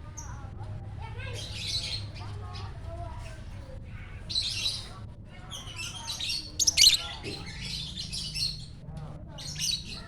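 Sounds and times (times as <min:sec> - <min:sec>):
lovebird squawking and chirping: 0:06.6 - 0:07.1.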